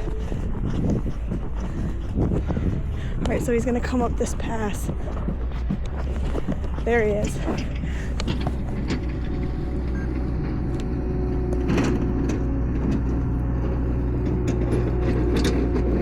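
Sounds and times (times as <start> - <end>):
skid steer engine running: 0.0 - 16.0.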